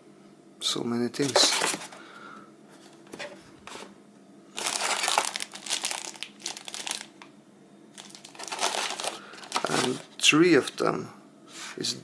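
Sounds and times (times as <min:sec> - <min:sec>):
packaging crinkling: 0:04.5 - 0:07.3, 0:07.9 - 0:10.3.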